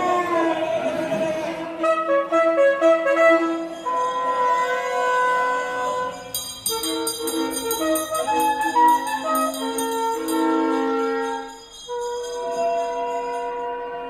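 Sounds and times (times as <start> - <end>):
reed instrument tones: 1.8 - 14.0
viola sliding tones: 3.8 - 13.6
rapid bell-like jingling: 5.8 - 14.0.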